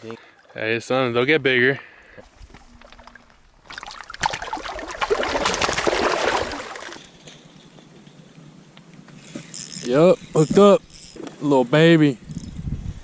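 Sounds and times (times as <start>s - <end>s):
water splashing: 2.6s - 7.0s.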